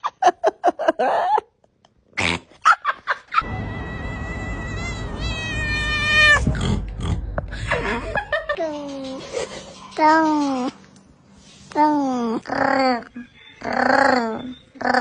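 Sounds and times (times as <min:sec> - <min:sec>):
cat crying: 0:03.4 - 0:06.6
cat chirping: 0:03.5 - 0:06.4.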